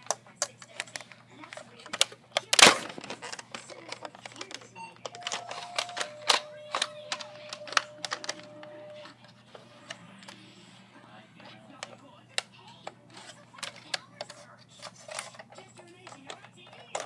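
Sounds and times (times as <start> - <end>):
plastic toy blaster clicks: 0.4 - 8.6.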